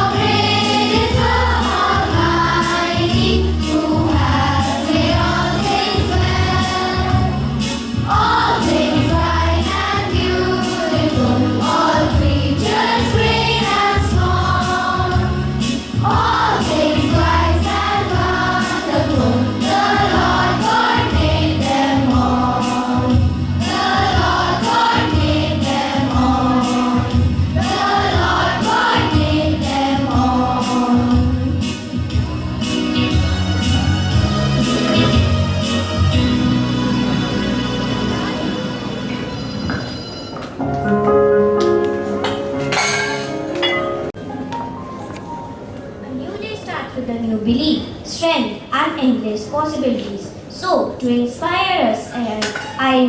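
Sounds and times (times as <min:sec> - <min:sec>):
group of voices singing: 0:00.0 - 0:31.9
instrumental backing with beat: 0:00.0 - 0:45.8.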